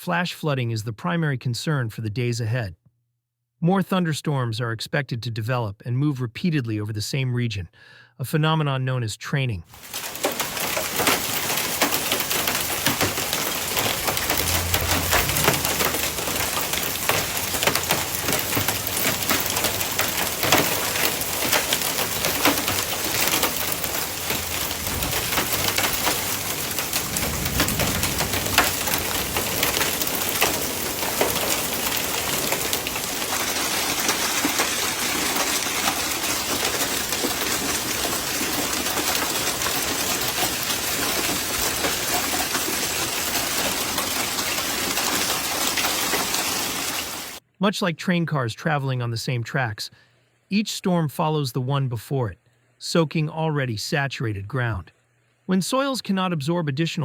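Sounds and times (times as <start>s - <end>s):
hail pattering: 9.7s - 47.4s
rushing downpour: 9.7s - 47.4s.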